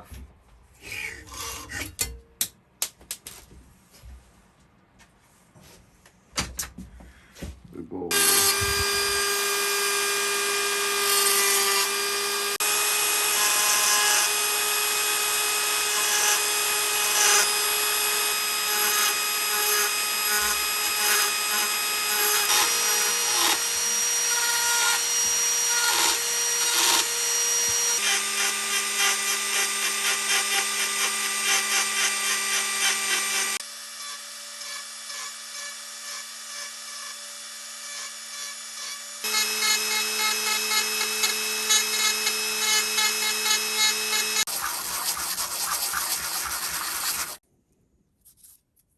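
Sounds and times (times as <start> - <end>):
lathe motor whining: 8.1 - 13.4, 39.2 - 44.5
tool cutting workpiece: 8.1 - 47.4.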